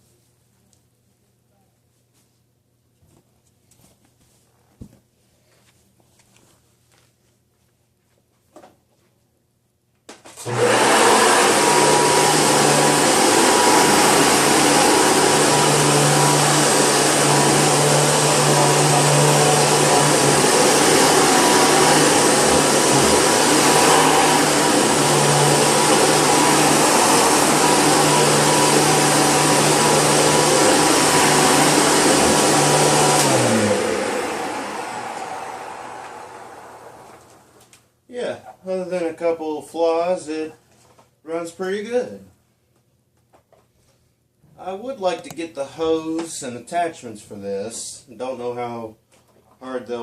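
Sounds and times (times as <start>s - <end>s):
vacuum cleaner motor running: 10.4s - 37.6s
motor winding down: 10.5s - 37.4s.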